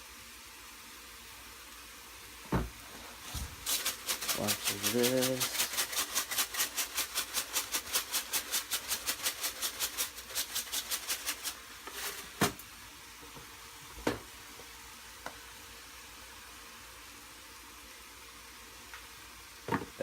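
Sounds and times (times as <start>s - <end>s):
meat sizzling in a pan: 0.0s - 19.7s
seasoning shaker rattling: 3.2s - 12.5s.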